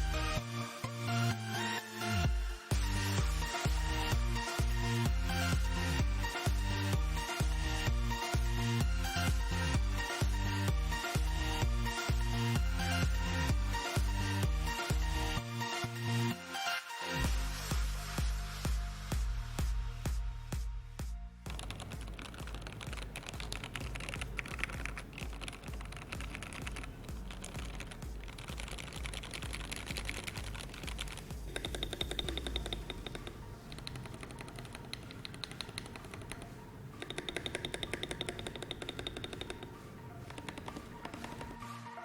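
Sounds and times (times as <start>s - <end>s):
electronic music: 21.5s - 41.6s
mechanical keyboard clicking: 21.5s - 41.6s.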